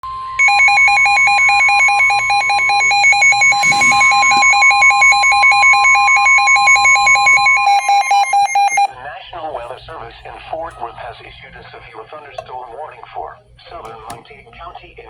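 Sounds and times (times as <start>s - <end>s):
loud steady alarm whistle: 0.0s - 8.9s
warbling electronic alert beep: 0.4s - 8.9s.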